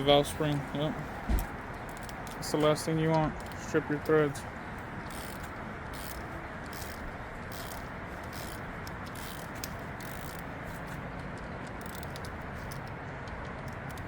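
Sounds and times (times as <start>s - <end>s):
steady background noise: 0.0s - 14.0s
hand tools scraping and clicking: 5.1s - 14.0s.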